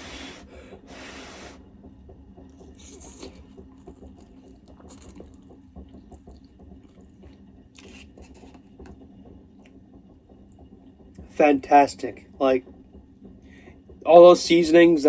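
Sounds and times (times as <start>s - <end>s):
man chewing food: 2.4s - 9.8s.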